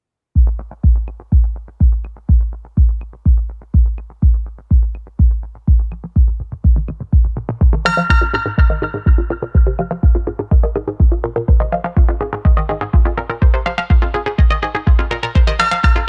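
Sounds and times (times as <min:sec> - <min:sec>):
deep kick drum: 0:00.4 - 0:16.0
synthesizer chords: 0:00.4 - 0:16.0.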